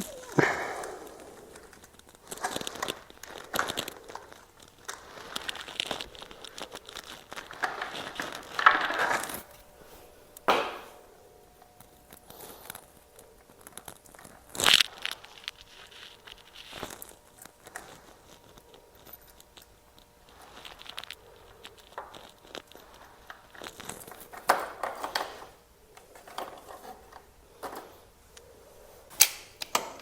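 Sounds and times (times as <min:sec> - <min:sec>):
sharp knocks: 0:10.5 - 0:11.0
tools and parts clicking: 0:23.6 - 0:28.5, 0:29.1 - 0:30.0.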